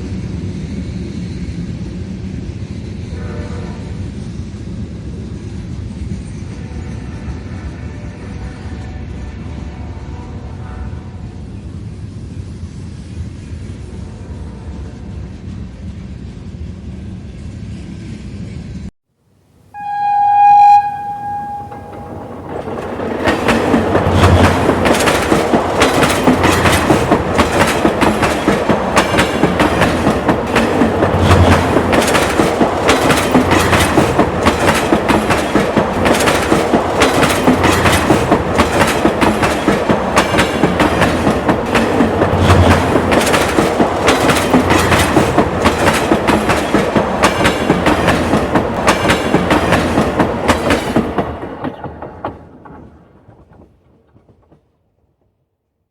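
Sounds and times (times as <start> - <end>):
train wheels clicking over rail joints: 21.0 - 55.1.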